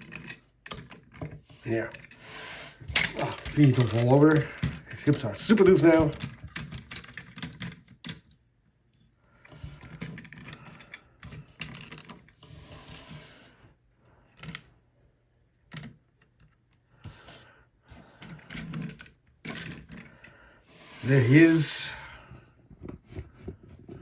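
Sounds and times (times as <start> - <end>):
plastic rubbing and shuffling: 2.8 - 7.7.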